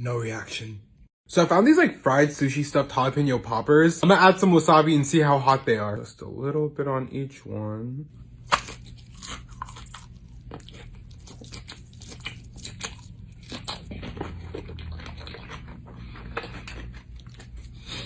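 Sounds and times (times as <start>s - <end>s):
crunching and chewing food: 8.3s - 18.0s.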